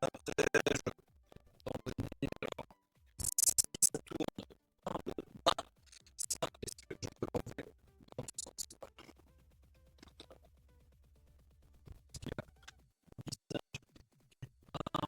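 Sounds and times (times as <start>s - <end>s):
scratchy clicking: 3.2s - 9.2s.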